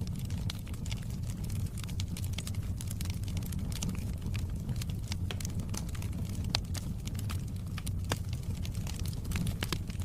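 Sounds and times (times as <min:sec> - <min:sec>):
wood fire crackling: 0:00.0 - 0:10.0.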